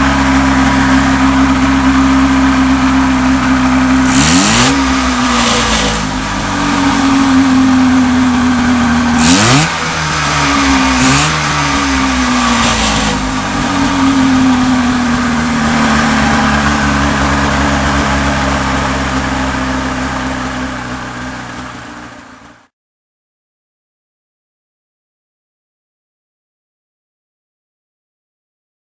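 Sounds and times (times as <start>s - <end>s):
two-stroke engine revving: 0.0s - 22.7s.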